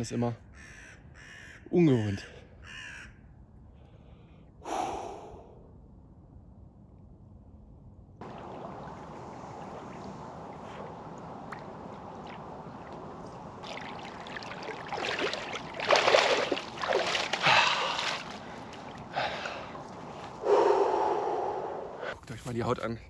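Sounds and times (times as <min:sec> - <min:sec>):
rushing water: 0:08.2 - 0:20.9
person wading with splashes: 0:08.2 - 0:22.1.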